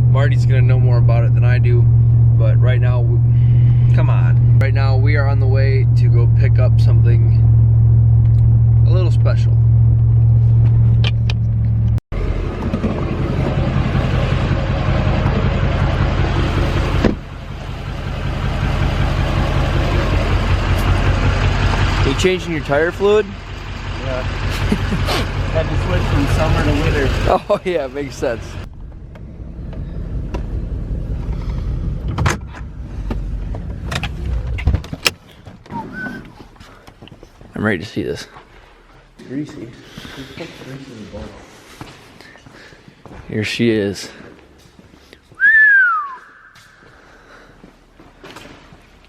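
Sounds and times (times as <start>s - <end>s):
car engine drone: 0.0s - 37.5s
road and wind noise: 6.2s - 38.8s.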